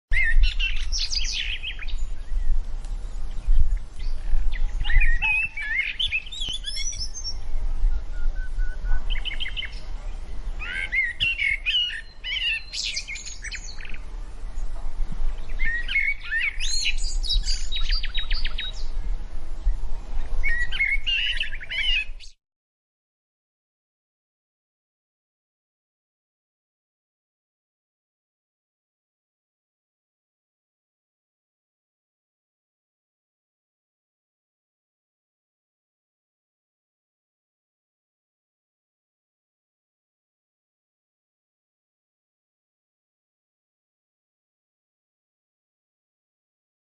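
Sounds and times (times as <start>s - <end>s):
small birds chirping: 0.1s - 22.4s.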